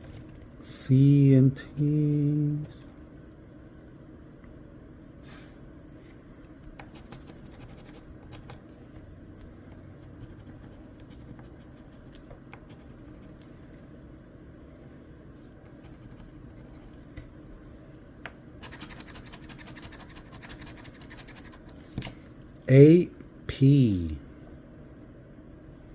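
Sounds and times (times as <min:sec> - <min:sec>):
scratching lottery ticket: 0:06.8 - 0:08.8, 0:10.0 - 0:13.5, 0:15.8 - 0:17.0, 0:18.6 - 0:21.8.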